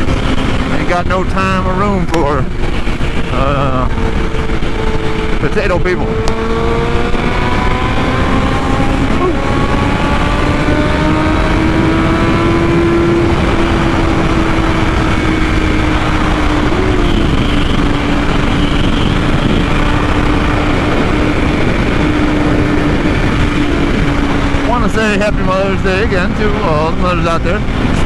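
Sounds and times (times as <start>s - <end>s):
motorcycle engine cruising: 0.0s - 28.0s
wind rush on microphone: 0.0s - 28.0s.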